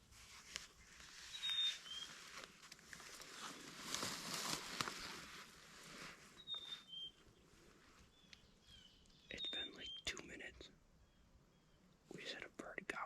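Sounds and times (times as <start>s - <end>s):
rustling and scraping: 0.0s - 6.4s
high bird chirps: 1.3s - 2.2s, 6.4s - 7.3s, 8.1s - 10.1s.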